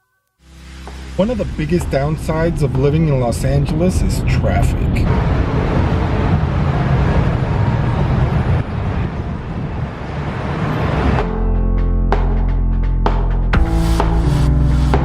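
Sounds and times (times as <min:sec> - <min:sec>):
music: 0:00.0 - 0:03.8, 0:11.2 - 0:15.0
road traffic rumble: 0:00.4 - 0:15.0.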